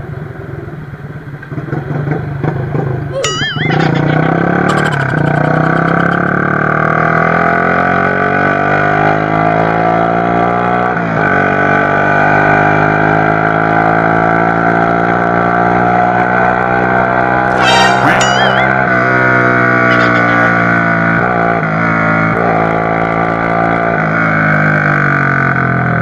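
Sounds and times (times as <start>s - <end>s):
motorcycle accelerating: 1.5s - 16.2s.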